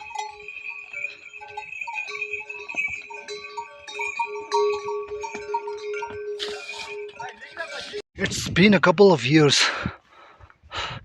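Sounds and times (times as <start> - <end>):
hooves knocking: 0.0 - 8.0
bells on pack horses ringing: 0.0 - 8.1.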